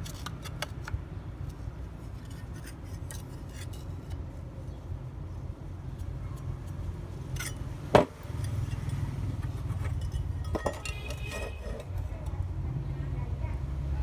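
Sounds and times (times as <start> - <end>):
small hard objects clinking: 8.3 - 12.0.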